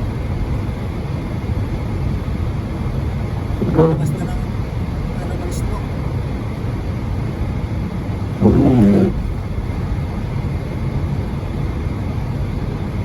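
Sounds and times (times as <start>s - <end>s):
short vocal sound: 8.4s - 9.4s.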